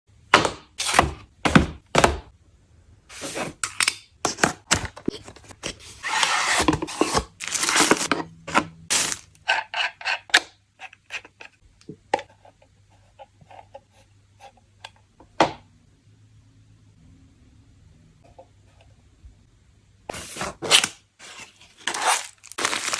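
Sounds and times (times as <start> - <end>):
packaging scraping and rustling: 5.1 - 9.3, 20.2 - 22.9.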